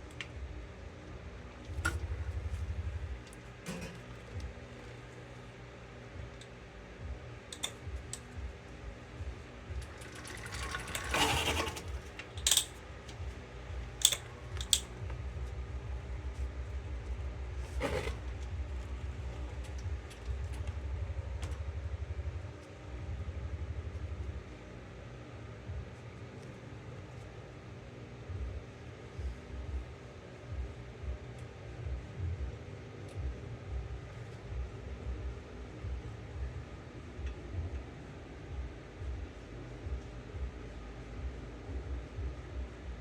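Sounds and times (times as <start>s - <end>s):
mechanical clatter: 9.8s - 12.8s.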